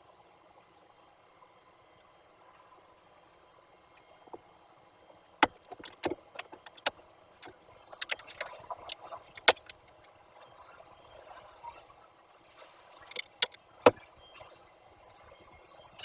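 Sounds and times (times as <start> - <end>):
bird pecking with sharp knocks: 5.4 - 7.0, 9.4 - 9.8, 13.1 - 14.0.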